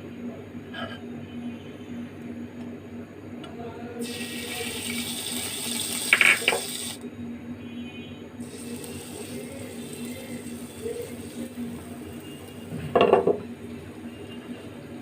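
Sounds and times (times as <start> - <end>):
pancake sizzling in a pan: 4.0 - 7.0, 8.4 - 12.7
utensil clatter: 6.0 - 6.8.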